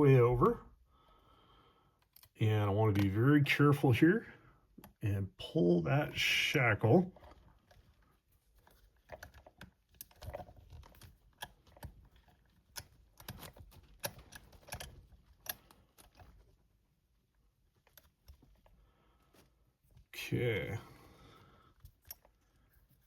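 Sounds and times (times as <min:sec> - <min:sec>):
small metallic clicks of padlock: 0:12.7 - 0:16.3.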